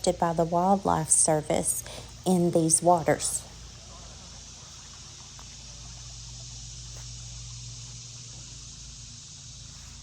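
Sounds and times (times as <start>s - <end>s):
faint low hum: 0.0s - 10.0s.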